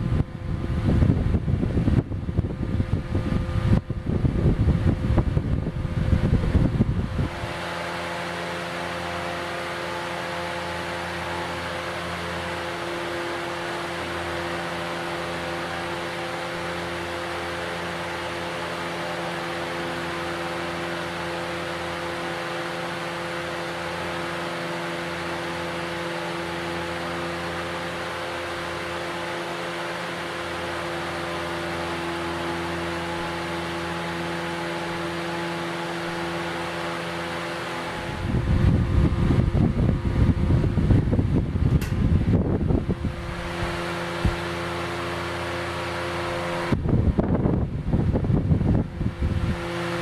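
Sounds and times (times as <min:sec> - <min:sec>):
wind buffeting microphone: 0:00.0 - 0:07.8, 0:37.9 - 0:44.8, 0:46.5 - 0:50.0
fan air rush: 0:00.0 - 0:50.0
low motor hum: 0:00.0 - 0:50.0.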